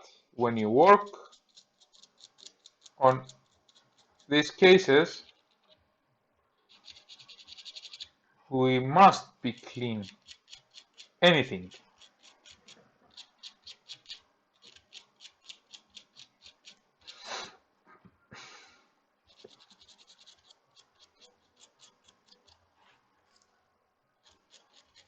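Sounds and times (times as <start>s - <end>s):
scrubbing a circuit board: 0.8s - 5.8s, 6.6s - 8.2s, 9.1s - 17.4s, 19.3s - 23.0s, 24.2s - 25.0s.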